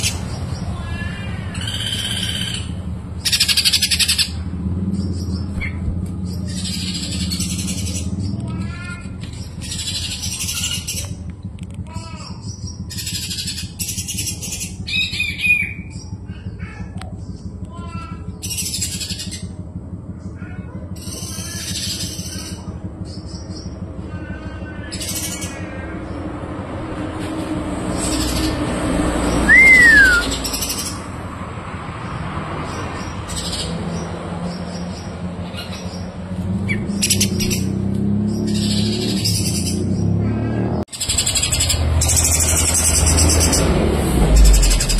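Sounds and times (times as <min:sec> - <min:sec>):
songbird singing: 0:27.9 - 0:40.2
songbird chirping: 0:29.2 - 0:31.0
low steady rumble: 0:42.4 - 0:44.9.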